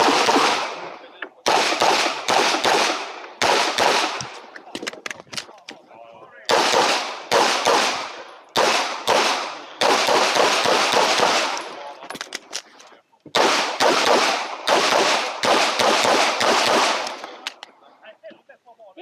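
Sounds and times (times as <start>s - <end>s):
pistol shots ringing out: 0.0s - 4.4s, 6.5s - 11.8s, 13.3s - 17.5s.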